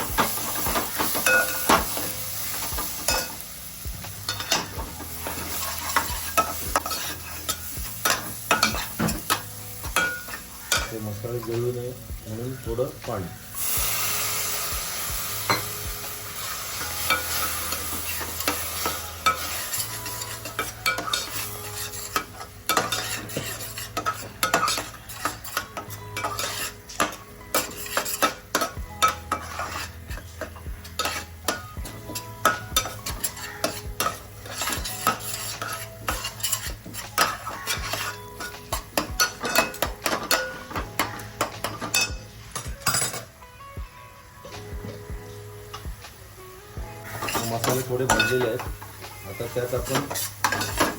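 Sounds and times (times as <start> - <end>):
food sizzling in oil: 0.0 - 50.9
spatula scraping a pan: 4.2 - 11.5, 16.4 - 43.1, 47.0 - 50.9.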